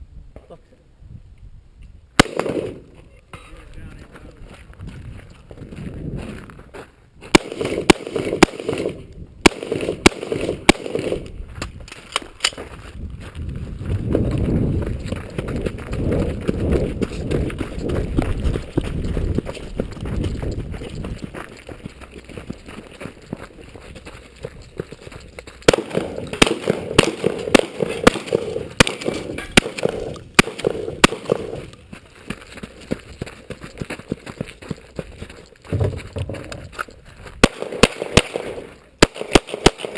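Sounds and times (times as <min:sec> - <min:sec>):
gunshots: 0:02.2 - 0:03.0, 0:07.3 - 0:11.3, 0:25.7 - 0:31.8, 0:37.4 - 0:39.9
rifle shots: 0:02.2 - 0:03.0, 0:07.3 - 0:11.3, 0:25.7 - 0:31.8, 0:37.4 - 0:39.9.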